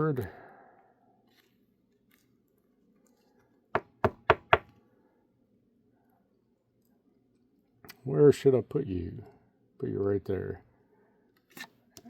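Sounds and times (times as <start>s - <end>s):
knocks on a tabletop: 3.8s - 4.7s.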